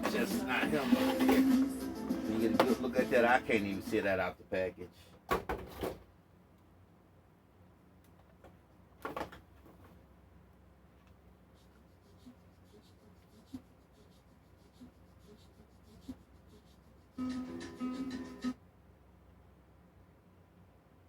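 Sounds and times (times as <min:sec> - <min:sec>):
music with held tones: 0:00.0 - 0:03.9, 0:17.2 - 0:18.6.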